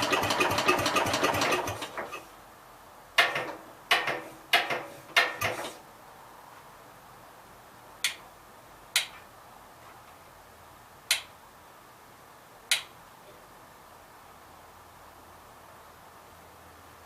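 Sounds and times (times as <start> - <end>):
sharp clicks: 11.1 - 11.3, 12.7 - 12.9.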